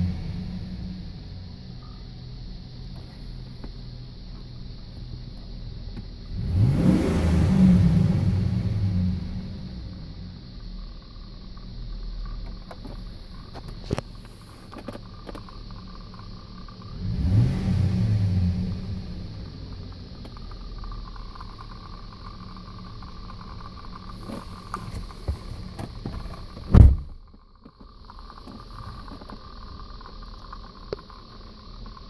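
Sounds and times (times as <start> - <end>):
engine revving: 0.0 - 1.4, 6.2 - 10.4, 16.2 - 26.0
engine high-pitched whine: 0.0 - 32.0.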